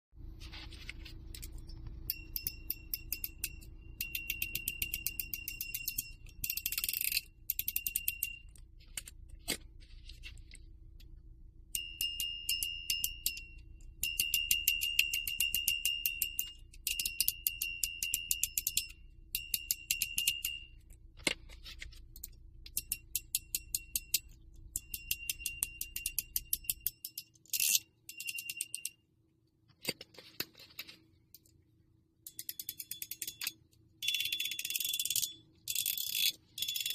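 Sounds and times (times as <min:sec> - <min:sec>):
fidget spinner clicking and ringing: 0:01.4 - 0:08.7, 0:11.7 - 0:21.0, 0:22.2 - 0:29.0, 0:32.3 - 0:36.9.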